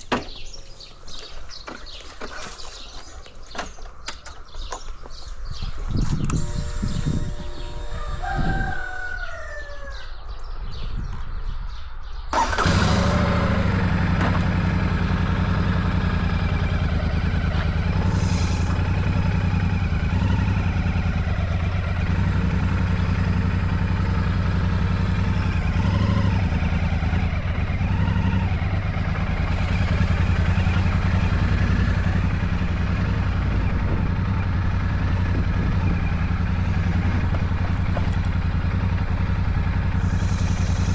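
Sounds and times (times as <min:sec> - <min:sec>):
motorcycle engine running: 0:06.2 - 0:09.0, 0:12.4 - 0:40.9
rooster crowing: 0:07.6 - 0:10.2.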